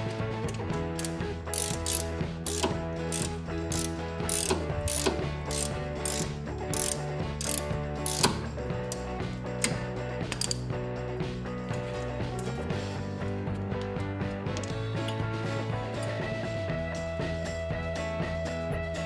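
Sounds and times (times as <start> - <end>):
socket ratchet clicking: 0.5 - 10.7.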